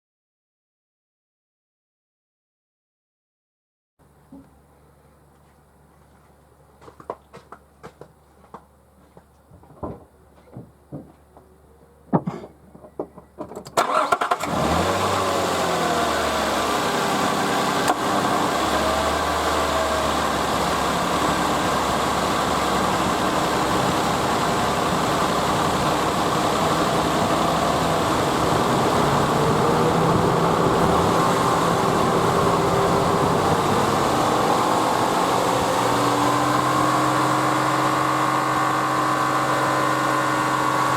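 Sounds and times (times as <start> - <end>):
car engine starting and running: 13.6 - 40.9.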